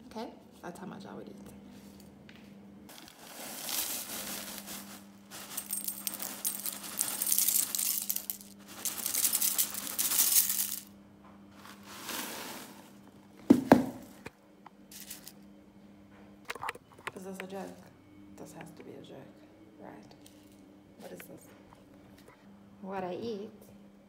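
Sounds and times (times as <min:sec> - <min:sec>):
cornflakes poured into a bowl: 0:02.9 - 0:10.9, 0:11.6 - 0:12.9.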